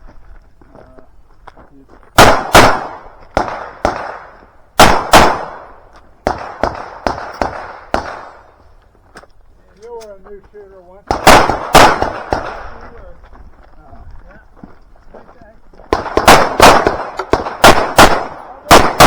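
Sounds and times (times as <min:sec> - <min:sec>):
pistol shots: 0:02.2 - 0:08.5, 0:11.1 - 0:12.8, 0:15.9 - 0:19.0.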